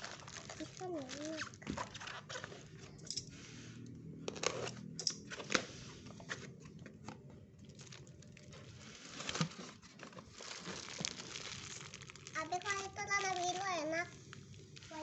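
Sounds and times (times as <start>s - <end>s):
packaging crinkling: 0.0s - 2.8s, 7.6s - 15.0s
parts being handled: 1.8s - 3.4s.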